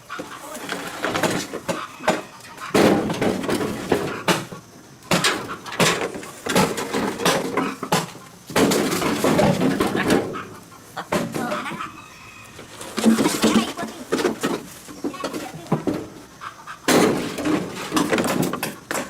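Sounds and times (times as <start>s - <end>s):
clattering knocks: 0.7s - 10.4s, 16.9s - 19.0s.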